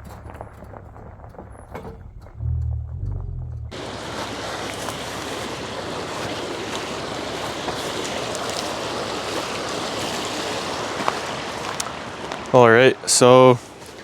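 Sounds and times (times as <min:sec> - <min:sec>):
river water rushing over stones: 0:03.7 - 0:14.0.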